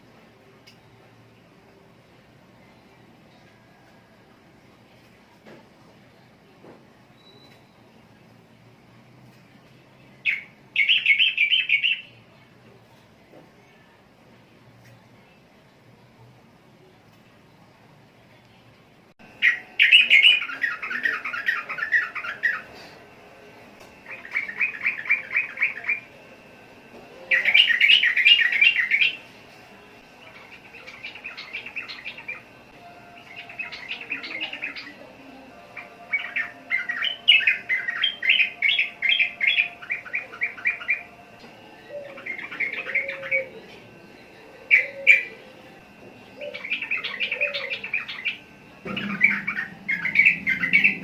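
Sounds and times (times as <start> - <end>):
bulbul singing: 10.2 - 12.2, 19.2 - 22.9, 23.5 - 26.6, 27.2 - 51.0.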